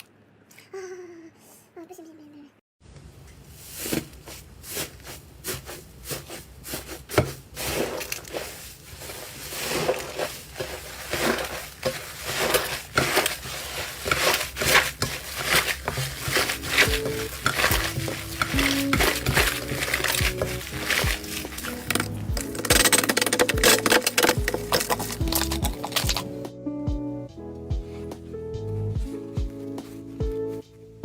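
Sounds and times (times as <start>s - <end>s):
soft music: 15.4s - 31.0s.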